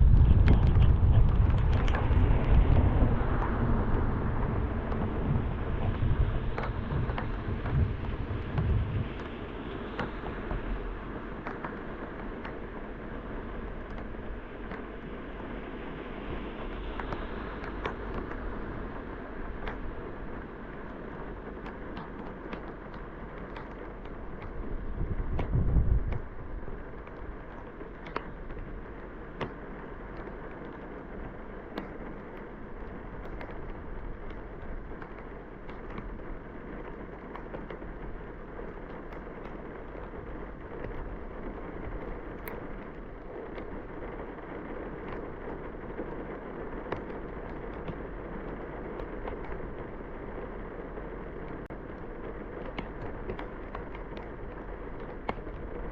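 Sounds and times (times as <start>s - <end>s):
low rumble: 0.0s - 11.4s
car driving through heavy rain: 0.0s - 55.9s.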